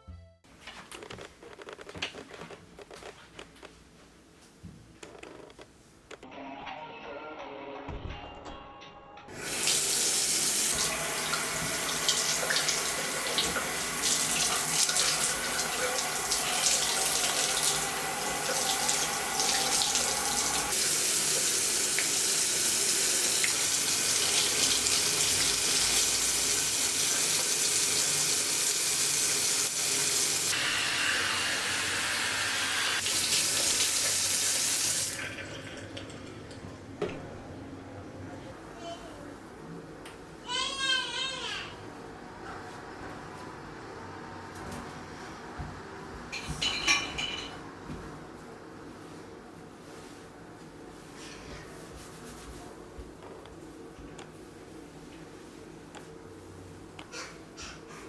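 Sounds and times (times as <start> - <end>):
tap water running into sink: 9.4 - 37.2.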